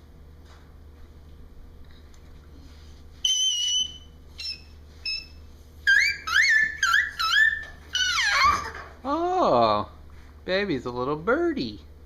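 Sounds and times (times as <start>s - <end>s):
baby squealing: 5.9s - 9.0s.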